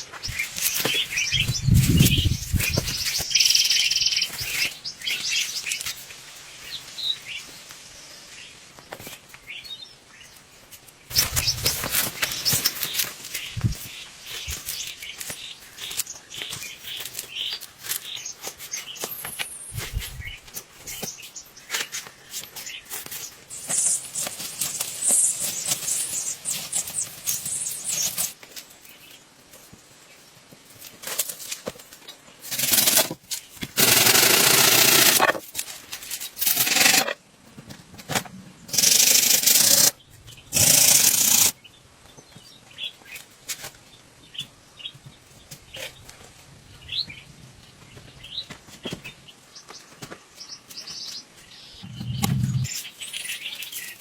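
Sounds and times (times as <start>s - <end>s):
rustling and clicking: 10.3s - 39.9s
loud rasping noises: 32.5s - 33.2s, 33.8s - 35.5s, 36.4s - 37.2s, 38.7s - 41.6s.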